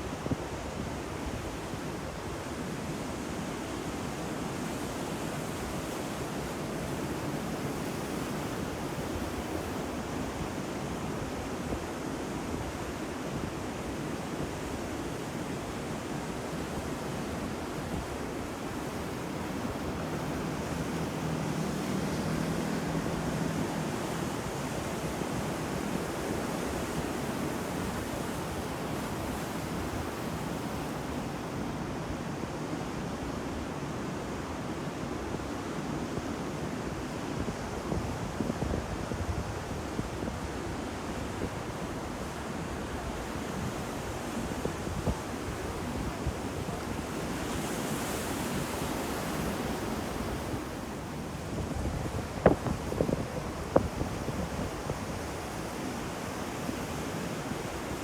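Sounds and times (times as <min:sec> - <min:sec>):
ocean waves breaking: 0:17.2 - 0:31.9, 0:42.4 - 0:58.0.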